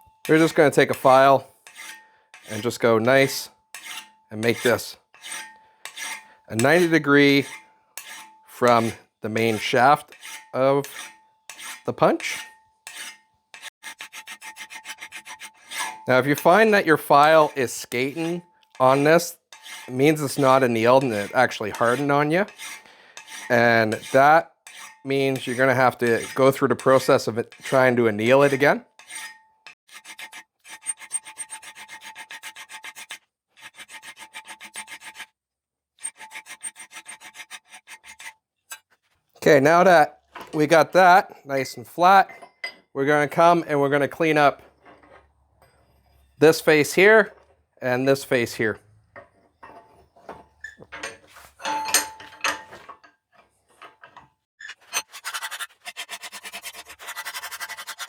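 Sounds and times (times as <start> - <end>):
hand file rasping on steel: 0.2 - 35.4, 36.0 - 38.9, 53.4 - 58.0.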